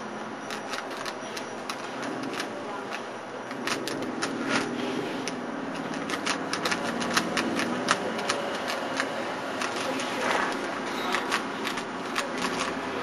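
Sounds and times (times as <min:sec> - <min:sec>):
puzzle cube clicking: 0:00.5 - 0:12.8.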